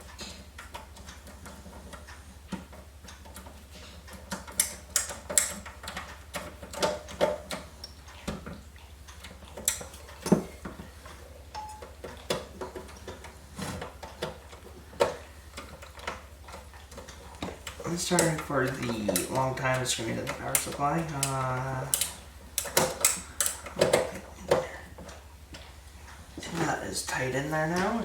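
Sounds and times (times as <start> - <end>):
steady low hum: 0.0 - 28.0
metallic clicks and knocks: 0.2 - 25.8.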